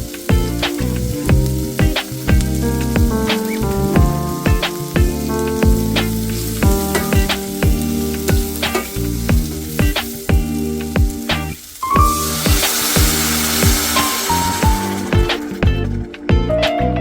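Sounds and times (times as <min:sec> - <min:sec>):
food sizzling in a pan: 0:00.0 - 0:15.8
background music with drum beat: 0:00.0 - 0:16.8.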